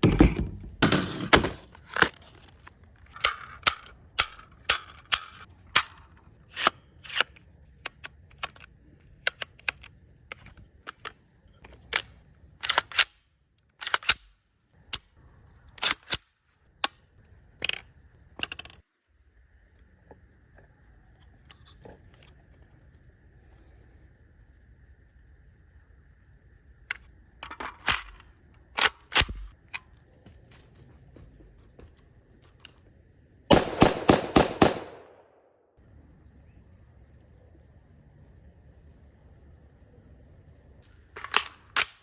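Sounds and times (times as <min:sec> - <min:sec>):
rifle metallic clicks: 0:03.1 - 0:15.1, 0:26.9 - 0:30.0, 0:33.5 - 0:35.4, 0:41.2 - 0:42.0.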